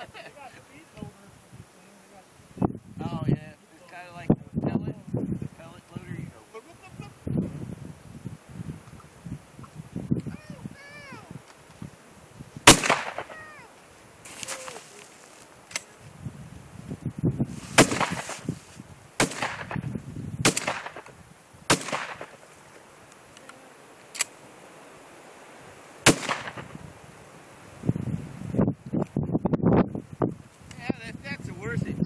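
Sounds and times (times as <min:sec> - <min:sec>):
faint sharp cracks: 0:12.7 - 0:13.4, 0:19.2 - 0:19.8, 0:20.5 - 0:24.4, 0:26.1 - 0:26.8
shotgun shots with echo: 0:12.7 - 0:13.4, 0:17.8 - 0:18.4, 0:19.2 - 0:21.1, 0:21.7 - 0:22.4, 0:26.0 - 0:26.8.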